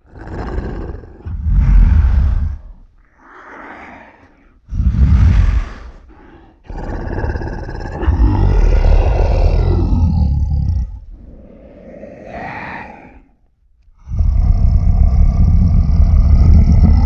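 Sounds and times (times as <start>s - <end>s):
monster roar: 0.0s - 2.7s, 6.7s - 13.4s, 14.0s - 17.0s.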